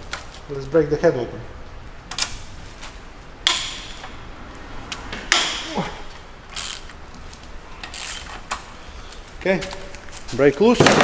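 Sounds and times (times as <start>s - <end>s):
bolts cracking loose: 1.9s - 11.0s
wrench scraping: 2.1s - 10.5s
short creak: 5.8s - 7.0s, 7.7s - 9.2s.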